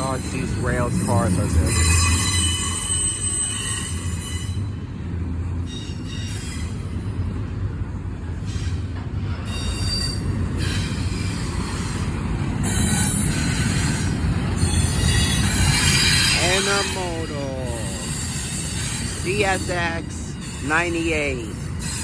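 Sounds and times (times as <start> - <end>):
steel wheels rumbling on rail: 0.0 - 22.0
high-pitched wheel squeals: 0.2 - 4.8, 9.4 - 12.0.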